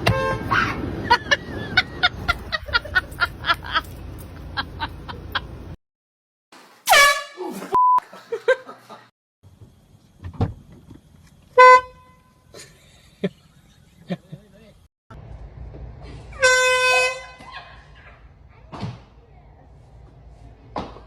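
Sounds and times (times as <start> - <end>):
air horn blasts: 0.0 - 0.5, 6.9 - 7.5, 11.6 - 12.3, 16.3 - 17.4.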